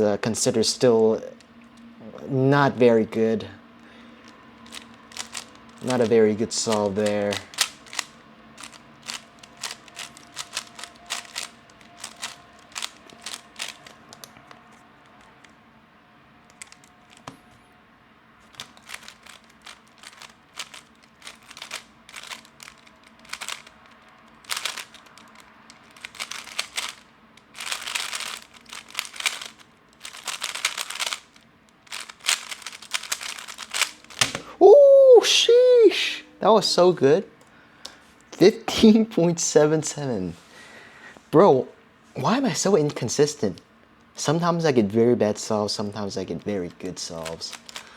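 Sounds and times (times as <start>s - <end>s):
puzzle cube clicking: 4.6s - 15.6s, 16.5s - 17.4s, 18.5s - 34.4s, 47.2s - 47.9s.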